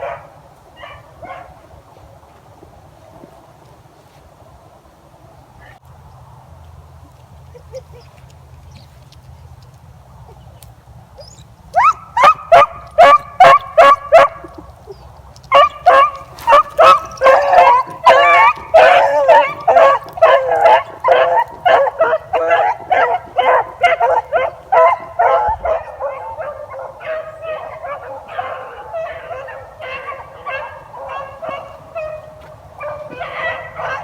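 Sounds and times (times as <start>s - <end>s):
beagles baying: 11.2s - 34.0s.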